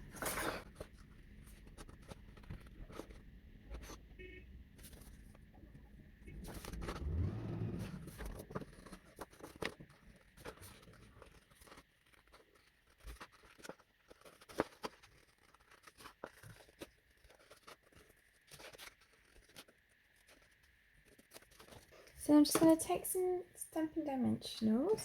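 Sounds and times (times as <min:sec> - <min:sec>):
paper rustling: 0:00.0 - 0:04.0, 0:04.8 - 0:05.5, 0:08.0 - 0:22.8.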